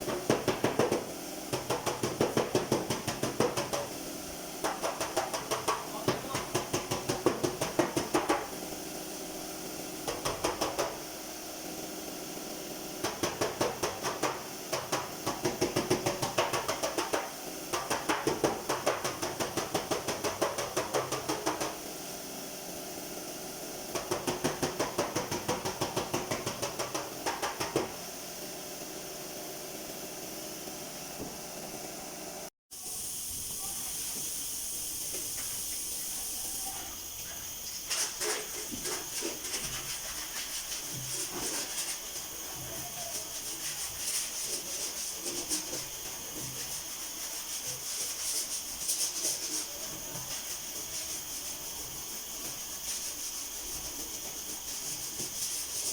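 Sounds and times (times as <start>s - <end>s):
steady hiss: 0.0s - 30.7s, 32.7s - 55.9s
hammer tapping sheet metal: 4.6s - 8.5s.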